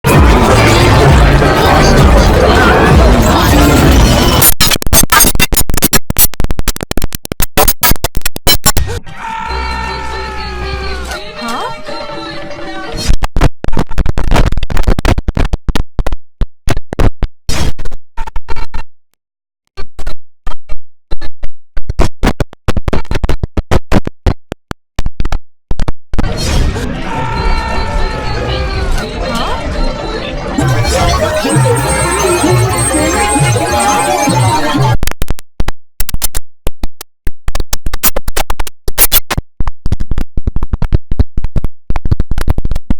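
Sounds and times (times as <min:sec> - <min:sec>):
stuttering chopped computer sound: 0:00.1 - 0:08.8, 0:13.1 - 0:18.8, 0:19.8 - 0:26.4, 0:30.5 - 0:42.9
gliding electronic tones: 0:28.1 - 0:35.0
stuttering computer shutdown sound: 0:30.5 - 0:35.0.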